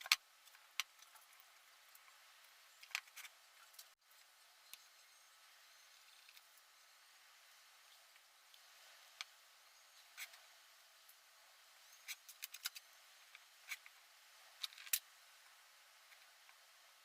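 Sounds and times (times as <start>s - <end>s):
faint steady hiss: 0.0s - 17.0s.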